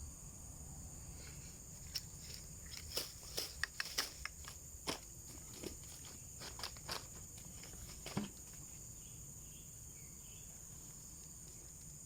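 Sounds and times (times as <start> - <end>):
high-pitched insect chorus: 0.0 - 12.0
sharp clicks or steps: 2.7 - 4.6.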